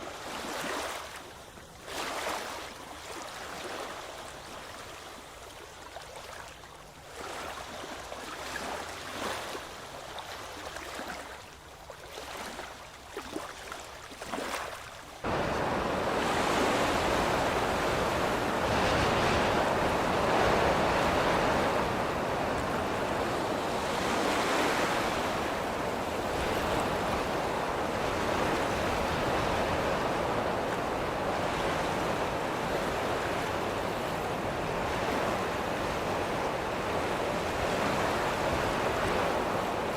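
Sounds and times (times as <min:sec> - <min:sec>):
water lapping with splashes: 0:00.0 - 0:39.9
ocean waves breaking: 0:14.2 - 0:39.9
wind on microphone: 0:15.2 - 0:39.9.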